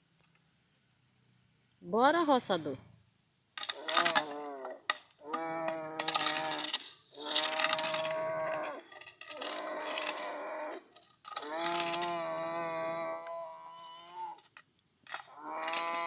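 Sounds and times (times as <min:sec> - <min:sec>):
child making buzzing motor noises: 0:04.2 - 0:06.5, 0:09.6 - 0:14.4, 0:15.3 - 0:16.0.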